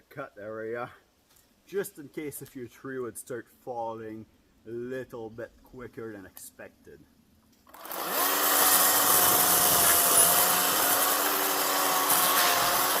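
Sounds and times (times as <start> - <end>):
electric chainsaw whine: 7.7 - 13.0
chain rasping in wood: 8.5 - 13.0.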